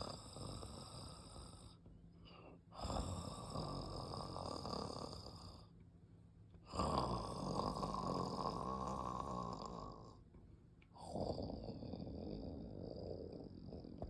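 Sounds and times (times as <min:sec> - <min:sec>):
dog snoring: 0:00.0 - 0:05.7, 0:06.6 - 0:10.2, 0:10.9 - 0:14.0.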